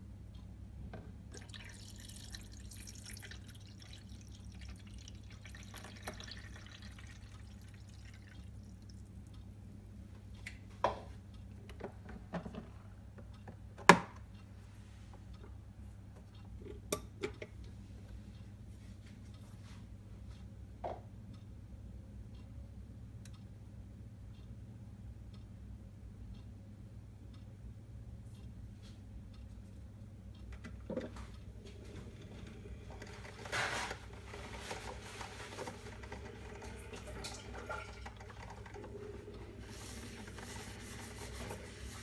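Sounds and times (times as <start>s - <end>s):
liquid trickling: 1.3s - 9.1s, 33.0s - 42.0s
steady low hum: 14.3s - 42.0s.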